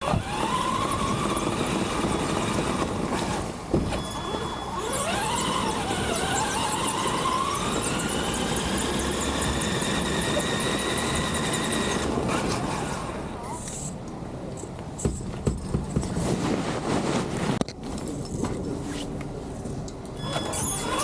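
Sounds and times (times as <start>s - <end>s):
electric motor whining: 0.0s - 2.8s
tyre and drivetrain noise: 0.0s - 16.6s.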